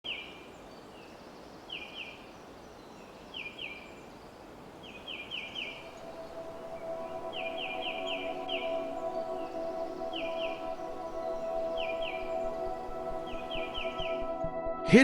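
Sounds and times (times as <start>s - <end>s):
forest ambience hiss: 0.1s - 14.4s
soft sustained music: 5.3s - 15.0s.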